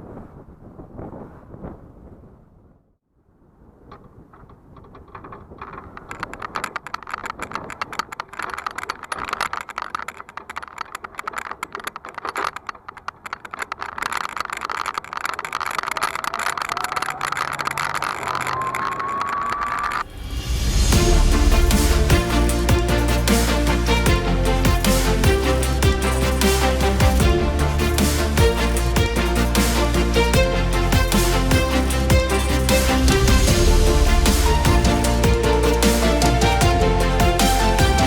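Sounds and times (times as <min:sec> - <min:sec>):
scooter rattling and clicking: 0:04.4 - 0:20.1.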